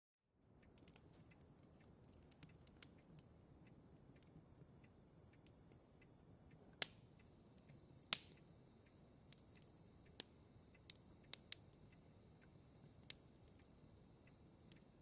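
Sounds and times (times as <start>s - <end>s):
sharp clicks: 0.6s - 5.6s
clock ticking softly: 0.6s - 15.0s.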